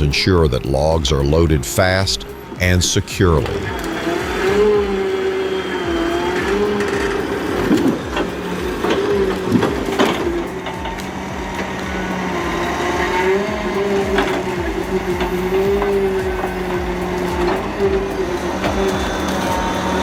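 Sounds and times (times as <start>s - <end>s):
machine engine and hydraulics whine: 0.0s - 20.0s
logs cracking and knocking: 2.5s - 20.0s.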